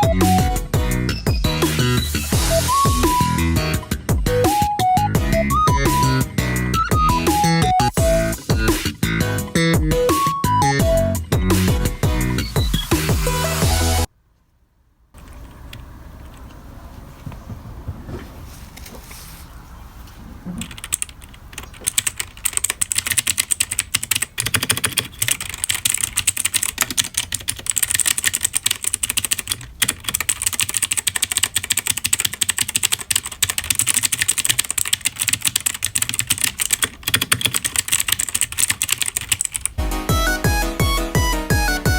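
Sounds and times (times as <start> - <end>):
fast keyboard typing: 20.6 - 39.8.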